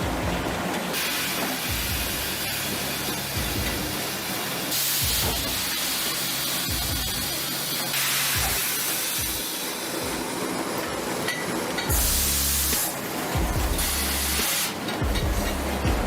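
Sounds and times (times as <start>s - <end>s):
sawmill machinery hissing: 0.0s - 16.0s.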